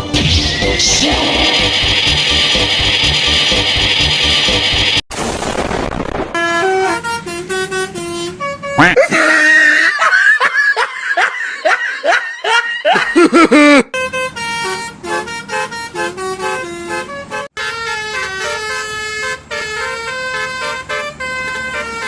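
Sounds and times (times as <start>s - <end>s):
multi-tone bus horn melody: 0.0s - 5.0s, 6.4s - 9.0s, 13.9s - 22.0s
high-pitched wavering glides: 0.1s - 4.1s.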